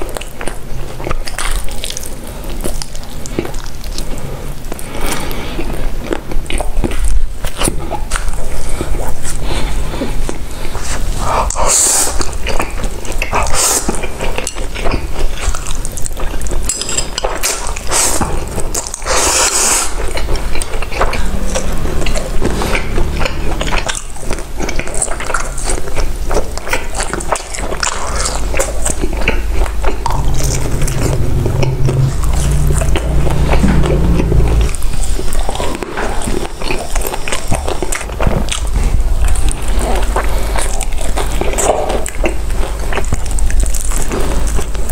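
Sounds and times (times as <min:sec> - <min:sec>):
chewing food: 0:00.0 - 0:44.9
crackling crunches: 0:00.0 - 0:44.9
low thumps: 0:29.8 - 0:35.6.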